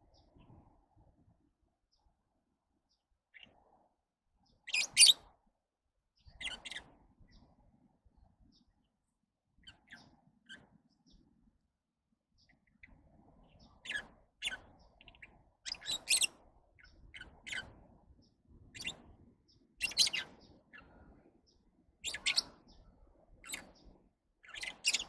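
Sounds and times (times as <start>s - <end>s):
lovebirds chirping: 4.7s - 5.2s, 13.6s - 17.6s, 19.8s - 20.3s, 22.0s - 22.8s, 24.4s - 25.0s.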